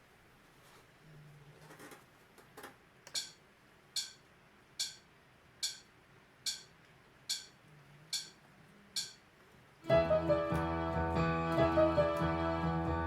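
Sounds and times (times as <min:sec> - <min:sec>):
metronome clicks: 0:03.0 - 0:09.3.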